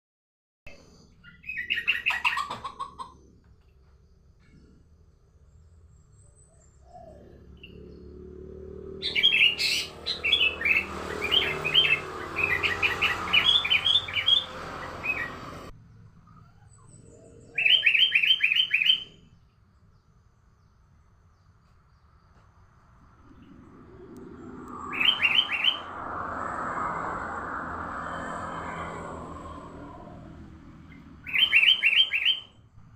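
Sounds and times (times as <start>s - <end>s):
rushing background noise: 22.7s - 32.0s.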